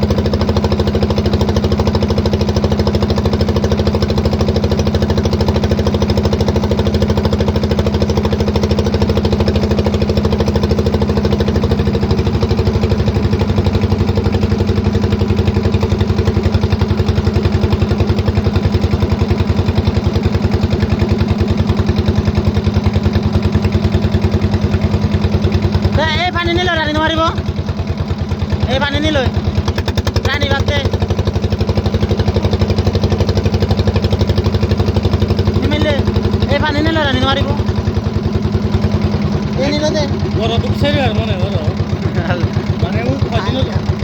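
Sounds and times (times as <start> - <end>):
boat engine chugging: 0.0 - 44.0.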